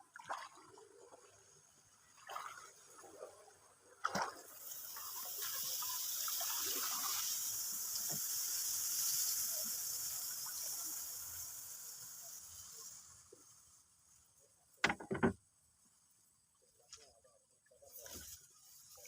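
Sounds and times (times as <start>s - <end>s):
water pouring and splashing: 0.0s - 1.3s, 2.1s - 3.2s, 4.0s - 13.8s, 17.9s - 19.0s.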